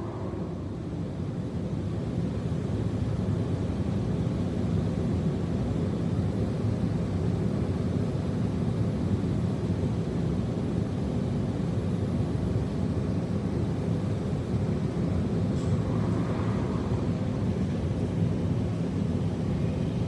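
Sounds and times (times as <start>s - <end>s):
low rumbling noise: 0.0s - 3.0s, 15.2s - 18.4s.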